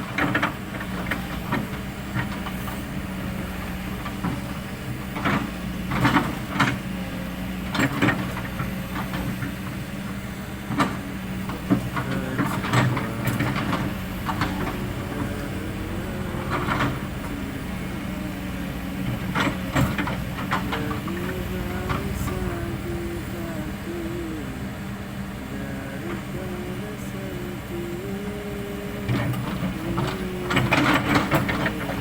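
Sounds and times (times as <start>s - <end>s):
excavator diesel engine running: 0.0s - 32.0s
excavator knocks and scrapes: 3.9s - 6.8s, 18.8s - 22.3s.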